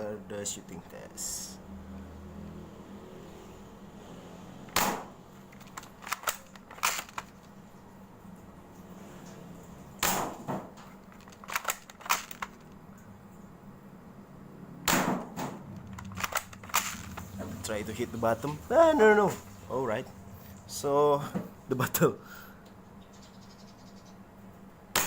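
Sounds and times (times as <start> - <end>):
airsoft rifle shots: 4.7 - 5.2, 10.0 - 10.6, 14.8 - 17.0
fainter mechanism clicks: 4.7 - 7.6, 11.0 - 12.8, 15.7 - 17.6.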